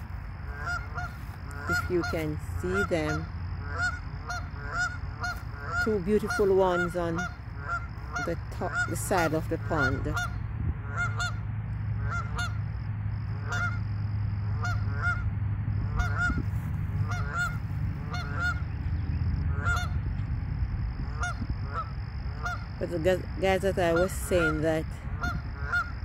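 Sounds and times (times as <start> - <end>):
geese honking: 0.0 - 20.3, 20.9 - 26.0
steady low rumble: 0.0 - 26.0.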